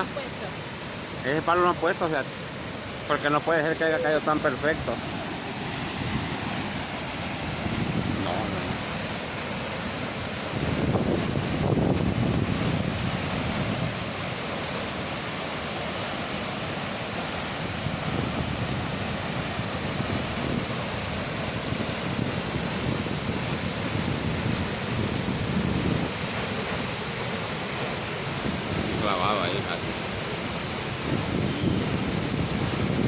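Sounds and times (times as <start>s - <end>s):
waterfall rushing: 0.0s - 33.0s
wind buffeting microphone: 4.7s - 9.1s, 10.4s - 14.1s, 17.6s - 26.9s, 28.3s - 33.0s.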